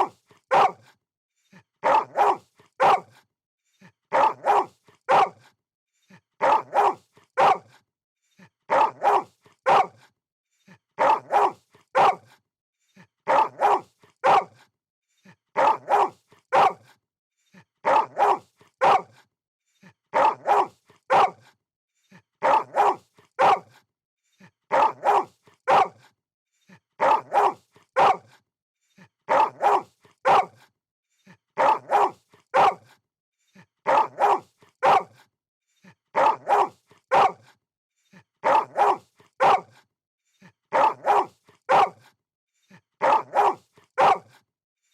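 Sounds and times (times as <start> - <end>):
dog barking: 0.0 - 0.9, 1.8 - 3.2, 4.1 - 5.5, 6.4 - 7.8, 8.7 - 10.1, 11.0 - 12.4, 13.3 - 14.7, 15.6 - 16.9, 17.8 - 19.2, 20.1 - 21.5, 22.4 - 23.8, 24.7 - 26.1, 27.0 - 28.4, 29.3 - 30.7, 31.6 - 33.0, 33.8 - 35.3, 36.1 - 37.6, 38.4 - 39.8, 40.7 - 42.1, 43.0 - 44.4.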